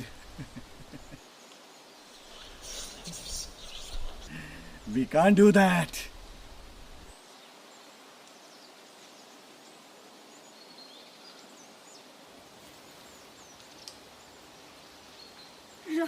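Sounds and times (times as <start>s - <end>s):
distant bird chirps: 0.0s - 8.7s
steady outdoor hiss: 0.0s - 16.0s.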